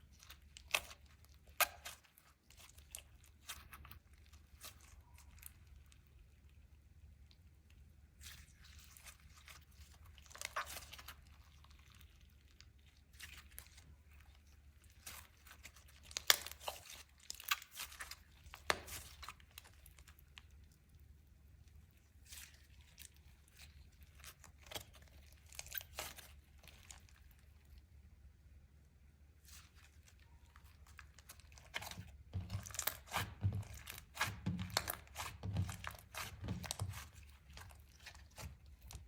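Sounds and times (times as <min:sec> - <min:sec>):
slime crackling and popping: 0:00.0 - 0:07.5, 0:08.1 - 0:20.9, 0:29.4 - 0:39.0.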